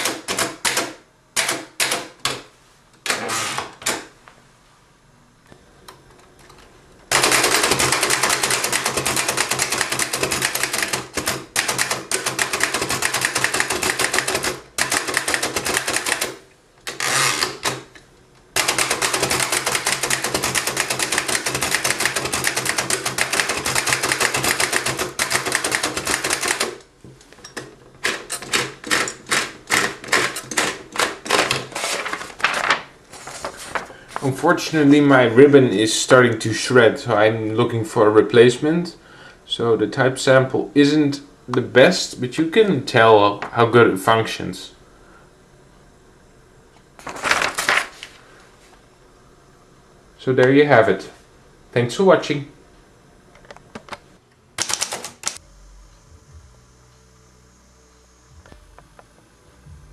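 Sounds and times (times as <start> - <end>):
typewriter keystroke clacks: 0.0 - 2.4, 7.1 - 17.0, 18.6 - 26.8, 28.0 - 31.6, 54.6 - 55.4.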